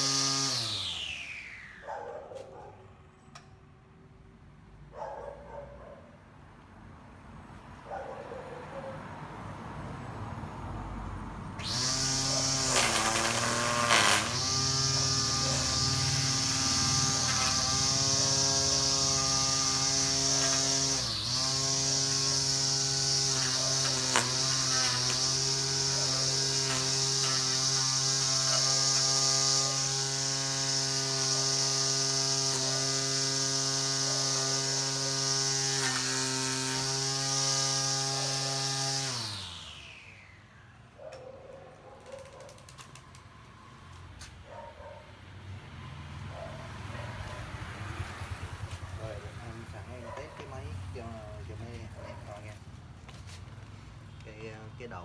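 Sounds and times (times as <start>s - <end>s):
string trimmer motor: 0.0s - 1.9s, 11.6s - 40.8s, 46.8s - 55.0s.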